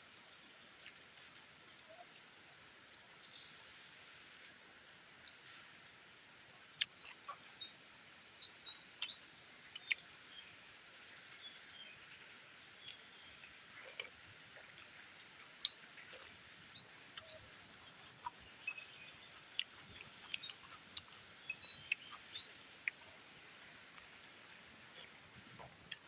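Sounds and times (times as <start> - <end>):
wet chewing mouth noises: 9.8 - 10.1, 12.8 - 23.3, 23.9 - 26.0.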